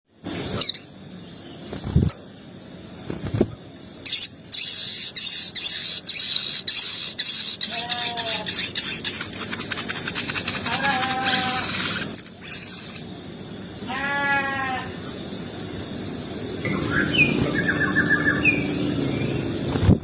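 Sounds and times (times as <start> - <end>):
bird chirping and chattering: 0.6 - 1.0, 3.2 - 13.1.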